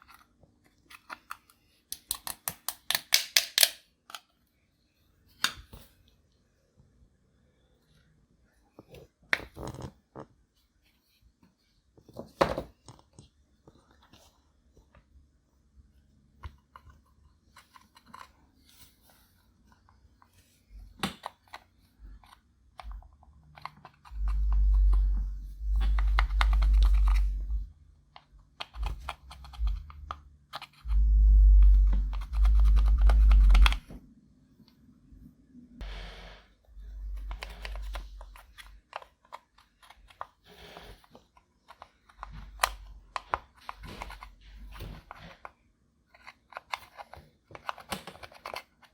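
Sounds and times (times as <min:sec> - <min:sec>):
loud low rumble: 0:24.1 - 0:27.8, 0:28.8 - 0:33.9.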